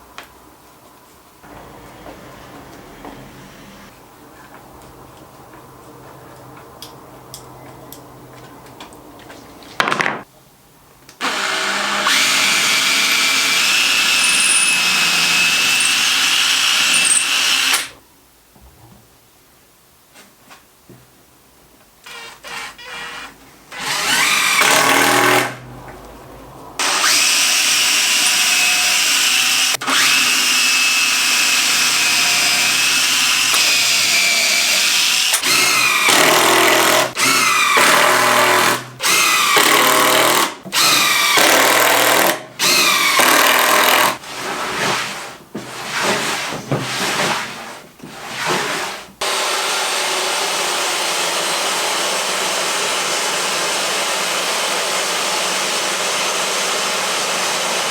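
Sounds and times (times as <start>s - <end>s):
power drill whining bursts: 11.2s - 18.0s.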